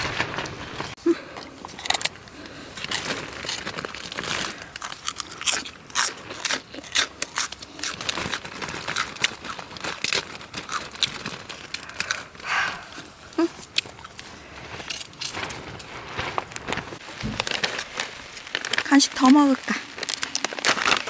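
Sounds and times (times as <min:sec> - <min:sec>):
dog crunching a hard treat: 0:01.4 - 0:14.3, 0:17.1 - 0:21.0.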